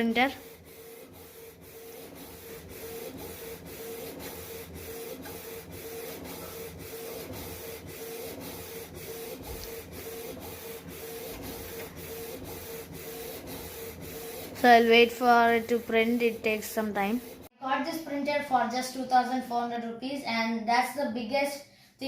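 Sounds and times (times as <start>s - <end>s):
inkjet printer whirring: 0.0s - 17.5s.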